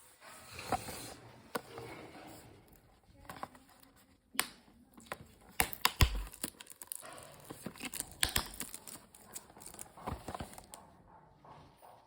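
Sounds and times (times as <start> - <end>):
plastic and cardboard crinkling: 2.3 - 10.9
packaging clicks and taps: 3.2 - 10.8.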